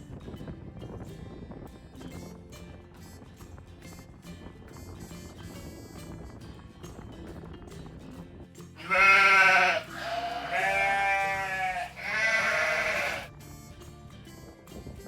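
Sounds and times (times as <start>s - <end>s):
background music: 8.6s - 14.8s
animal bleating: 8.8s - 13.3s.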